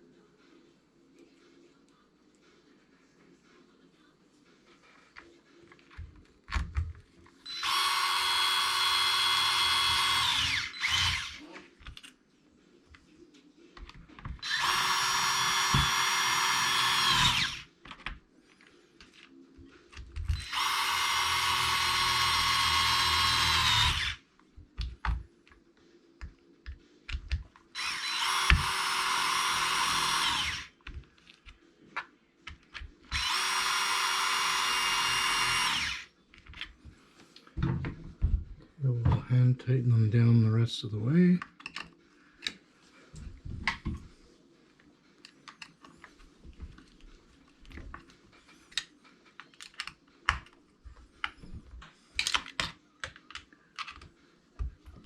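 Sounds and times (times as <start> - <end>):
power drill whine: 7.5 - 11.4, 14.4 - 17.6, 20.3 - 24.2, 27.8 - 30.7, 33.1 - 36.1.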